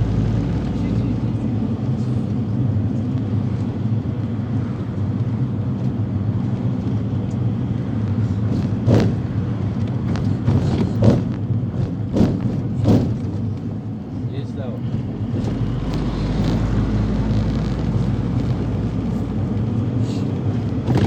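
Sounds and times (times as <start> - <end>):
engine and road rumble: 0.0 - 21.0
short knocks or rattles: 10.0 - 13.6.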